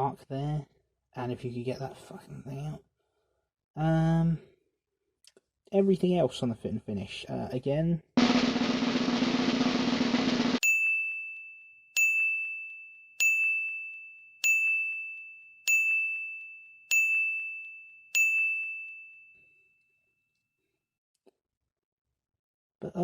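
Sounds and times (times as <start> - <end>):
bright bell ding: 10.6 - 19.8.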